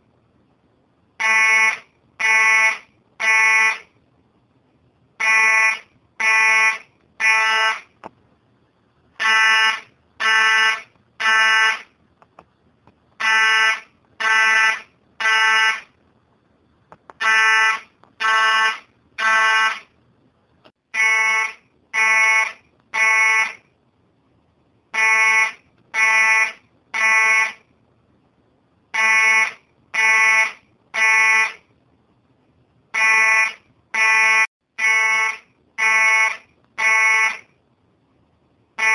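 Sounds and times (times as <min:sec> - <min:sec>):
fire alarm beeping: 0:01.2 - 0:03.9, 0:05.2 - 0:07.9, 0:09.2 - 0:11.9, 0:13.2 - 0:15.9, 0:17.2 - 0:19.9, 0:21.0 - 0:23.6, 0:25.0 - 0:27.6, 0:29.0 - 0:31.6, 0:33.0 - 0:37.5.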